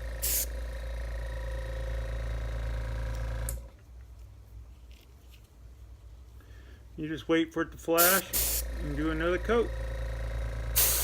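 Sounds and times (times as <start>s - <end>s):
small compressor humming: 0.0s - 3.8s, 8.0s - 11.0s
airbrush spray hiss: 0.2s - 0.5s, 8.0s - 8.6s, 10.8s - 11.0s.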